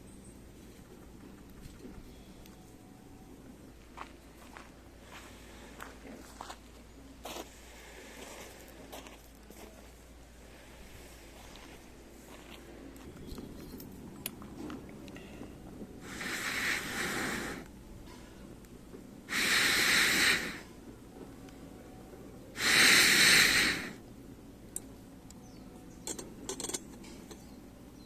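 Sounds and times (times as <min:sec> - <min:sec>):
person blowing onto a fire: 0:16.0 - 0:17.7, 0:19.3 - 0:20.8, 0:22.6 - 0:24.0.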